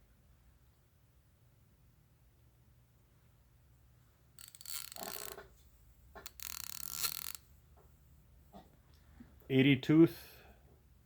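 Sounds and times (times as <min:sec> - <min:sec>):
ratchet clicking: 0:04.4 - 0:05.4, 0:06.2 - 0:07.4.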